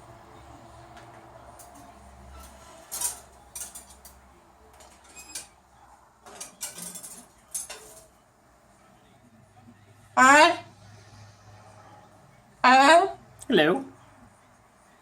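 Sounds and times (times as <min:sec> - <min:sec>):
hard objects clicking and scraping: 0:00.9 - 0:05.6, 0:06.2 - 0:08.1.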